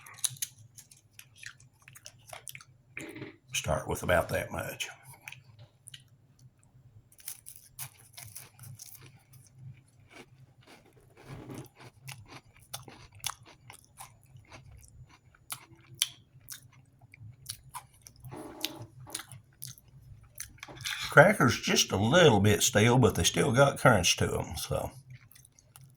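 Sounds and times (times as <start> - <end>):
crackers being chewed crunchily: 0.0 - 25.9.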